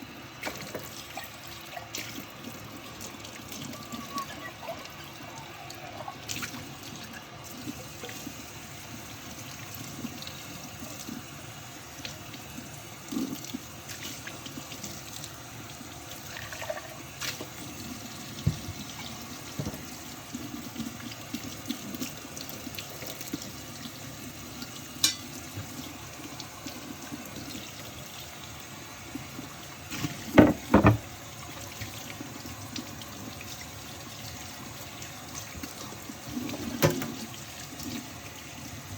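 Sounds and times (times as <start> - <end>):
water running into sink: 0.0 - 38.9
dishes clinking and knocking: 25.0 - 25.3, 30.4 - 31.1.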